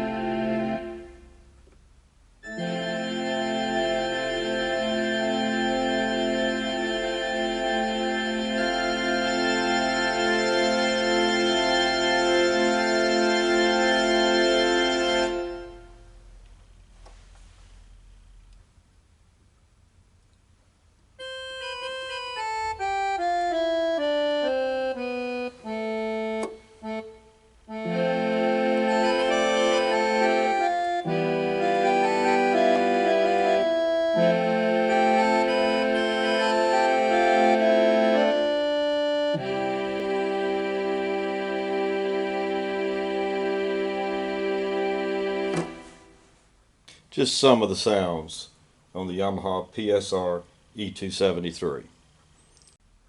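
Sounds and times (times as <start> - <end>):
keyboard playing organ notes and chords: 0.0 - 1.8, 2.4 - 16.4, 21.1 - 46.4.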